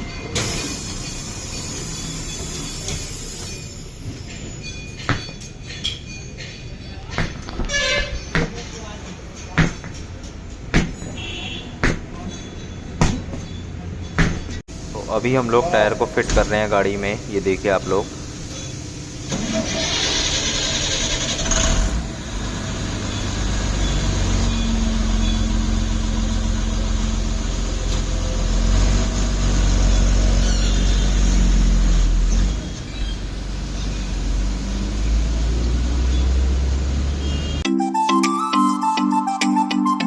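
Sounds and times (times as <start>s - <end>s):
engine low rumble: 13.9s - 37.6s.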